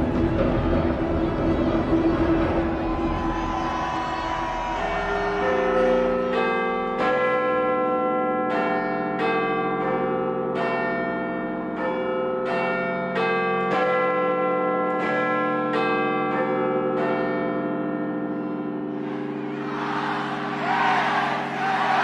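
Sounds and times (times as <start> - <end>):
bells ringing: 0.0 - 22.0.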